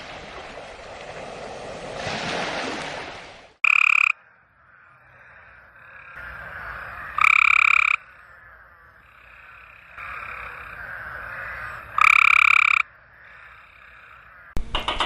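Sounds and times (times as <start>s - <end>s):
background frog chorus: 3.6s - 14.6s
frog croaking: 3.6s - 14.6s.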